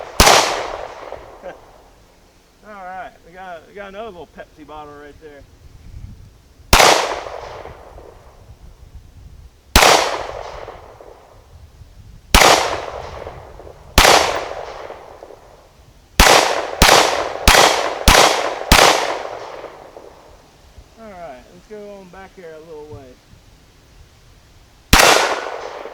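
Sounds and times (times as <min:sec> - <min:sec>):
pistol shots echoing: 0:00.0 - 0:01.8, 0:06.7 - 0:08.2, 0:09.8 - 0:11.3, 0:12.4 - 0:15.5, 0:16.2 - 0:20.3, 0:24.9 - 0:25.9.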